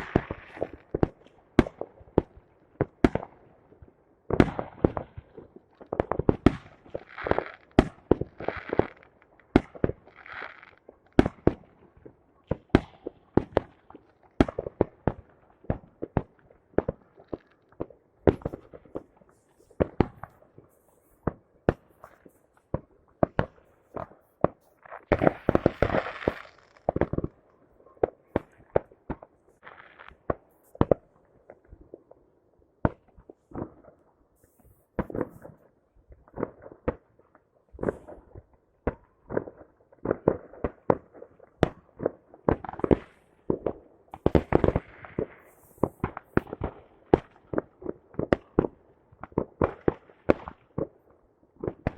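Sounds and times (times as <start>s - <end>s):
fireworks crackling: 0.0s - 1.8s, 16.0s - 27.4s, 28.0s - 32.0s, 32.9s - 35.6s, 41.7s - 48.8s
fireworks bangs: 17.8s - 27.4s, 32.8s - 35.6s, 42.5s - 48.8s.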